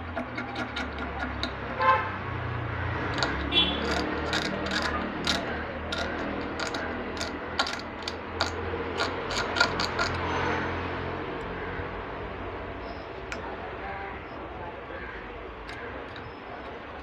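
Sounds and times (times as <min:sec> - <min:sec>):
hand tool clicking and tapping: 0:00.0 - 0:01.9, 0:03.0 - 0:10.2, 0:15.7 - 0:17.0.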